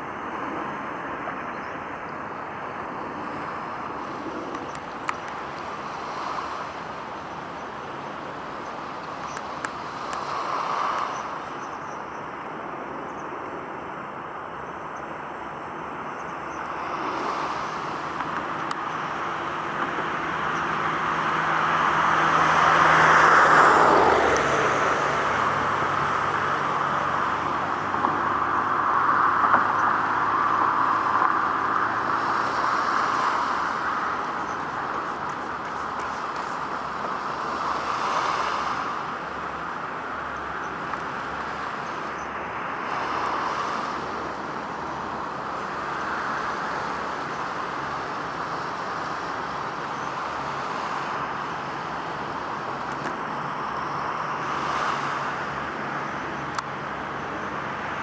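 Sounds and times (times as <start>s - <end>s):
road traffic passing: 0.0s - 58.0s
low engine hum: 15.2s - 58.0s
vehicle passing close: 17.3s - 44.4s.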